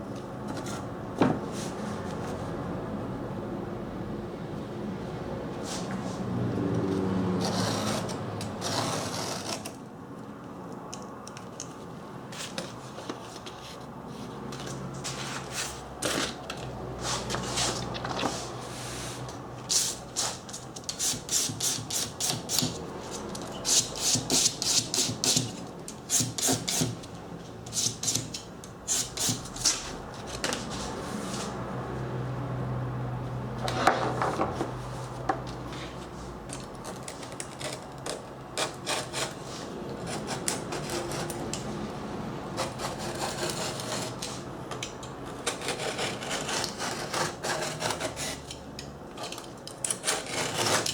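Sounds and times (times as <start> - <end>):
hand scraping strokes: 17.0 - 22.4.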